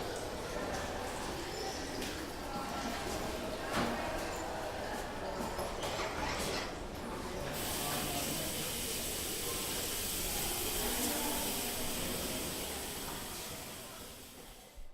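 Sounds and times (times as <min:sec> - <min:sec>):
water hissing: 0:07.6 - 0:14.5.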